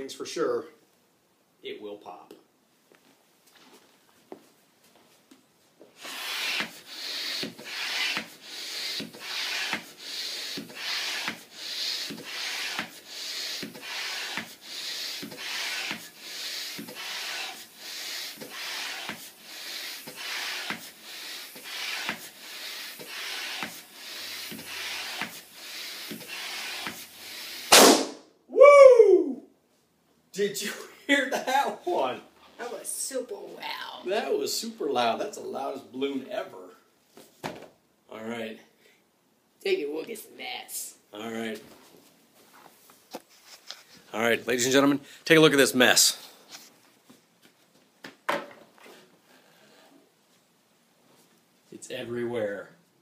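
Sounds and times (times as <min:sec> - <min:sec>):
balloon pump hissing: 0:05.9 - 0:28.1
balloon bursting pop: 0:27.6 - 0:28.3
person crying out: 0:28.5 - 0:29.5.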